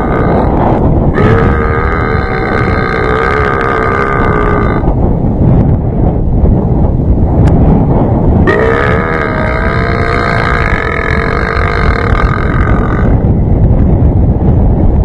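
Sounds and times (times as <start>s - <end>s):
man burping: 0.0s - 4.9s, 8.5s - 13.2s
steady low rumble: 0.0s - 15.0s.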